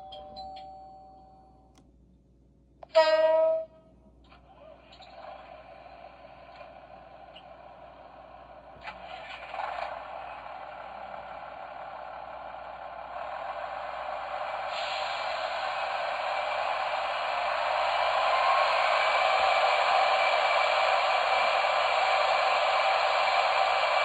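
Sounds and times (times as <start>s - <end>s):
hiss-like train running noise: 4.5s - 24.0s.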